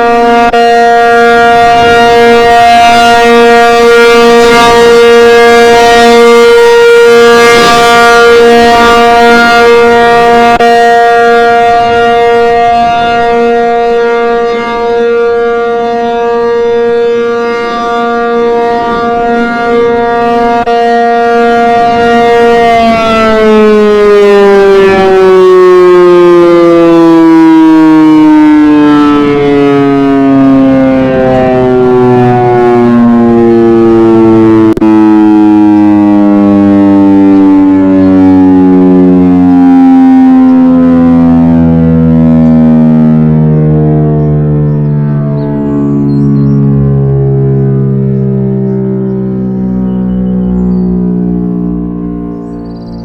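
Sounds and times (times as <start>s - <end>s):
warning siren winding down: 0.0s - 53.0s.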